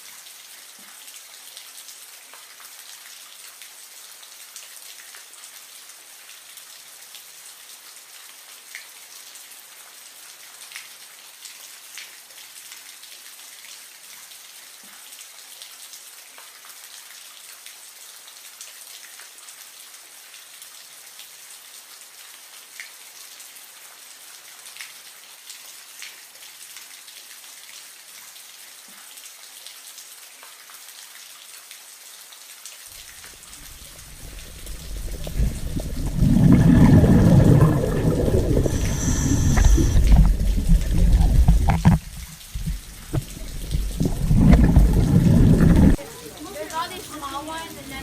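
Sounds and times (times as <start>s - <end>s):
patter of falling water: 0.0s - 48.0s
low rushing water: 33.0s - 48.0s.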